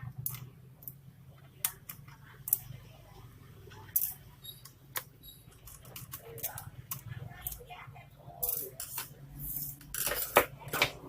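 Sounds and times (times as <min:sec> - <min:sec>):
tools clicking and tapping: 0:03.8 - 0:07.6, 0:08.4 - 0:11.0.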